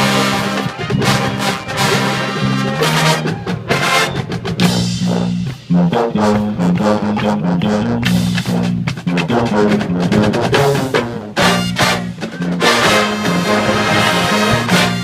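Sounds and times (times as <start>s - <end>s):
drumline playing: 0.0s - 15.0s
marching band brass: 0.0s - 15.0s.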